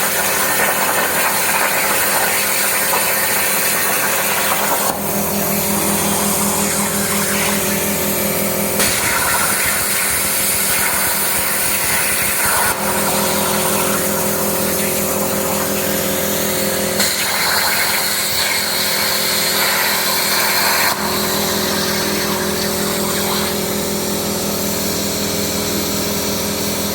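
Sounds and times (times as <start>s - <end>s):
plasma torch hissing: 0.6s - 23.6s
machine hum: 4.3s - 26.9s.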